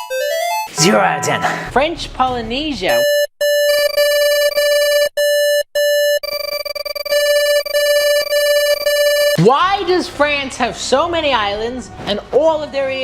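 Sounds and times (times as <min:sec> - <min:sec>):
buzzy electronic alert beep: 0:00.7 - 0:01.8.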